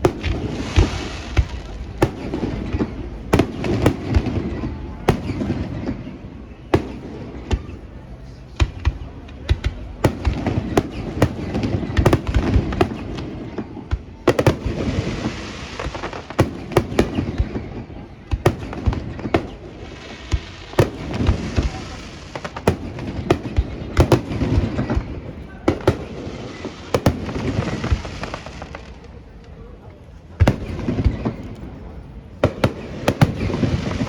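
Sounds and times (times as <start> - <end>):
firework crackling: 0.0 - 29.6, 30.4 - 34.0
firework shells bursting: 10.0 - 13.5, 14.3 - 17.7, 18.4 - 25.1, 32.5 - 34.0.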